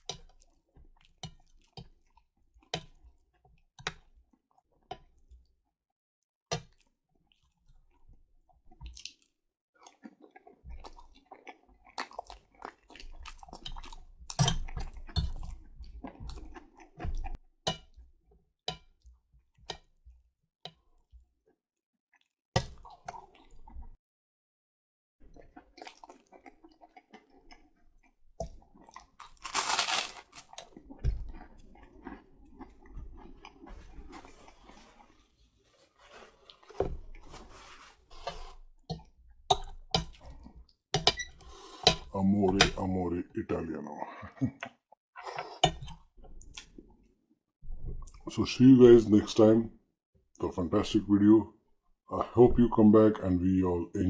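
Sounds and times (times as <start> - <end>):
wet chewing and mouth smacks: 8.8 - 17.4, 25.3 - 34.3.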